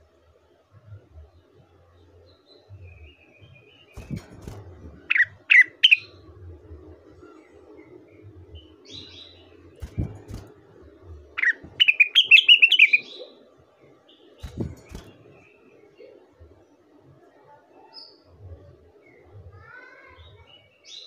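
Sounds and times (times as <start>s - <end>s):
low thumps: 2.7s - 12.0s, 14.4s - 15.4s
bird whistling and chirping: 5.1s - 6.1s, 11.4s - 13.3s.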